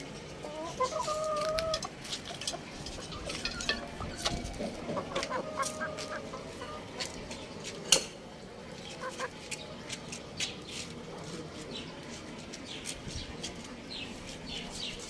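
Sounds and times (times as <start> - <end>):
young rooster chirping: 0.5 - 1.8.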